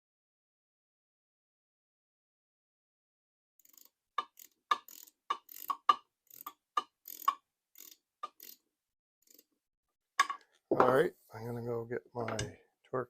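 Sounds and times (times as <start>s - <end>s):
ratchet wrench clicking: 3.6s - 8.6s, 9.2s - 9.5s.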